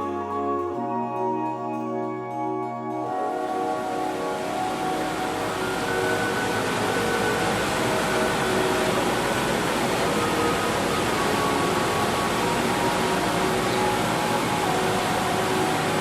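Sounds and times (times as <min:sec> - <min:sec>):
music playing: 0:00.0 - 0:16.0.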